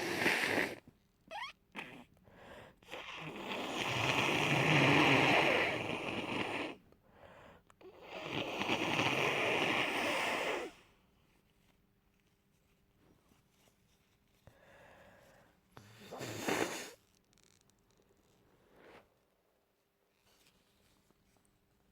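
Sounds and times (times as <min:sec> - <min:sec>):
congested nose blowing: 0:00.0 - 0:02.1, 0:02.8 - 0:06.8, 0:08.0 - 0:10.9, 0:15.8 - 0:17.0.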